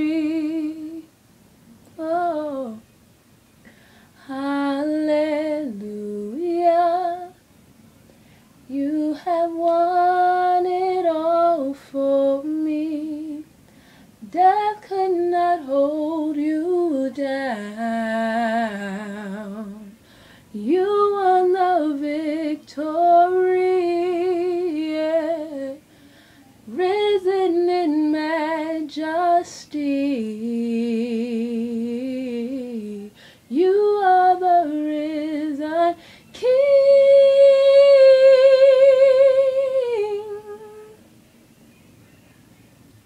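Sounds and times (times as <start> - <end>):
woman singing gospel unaccompanied: 0.0 - 1.2, 1.8 - 2.9, 4.2 - 7.4, 8.7 - 13.5, 14.2 - 41.1.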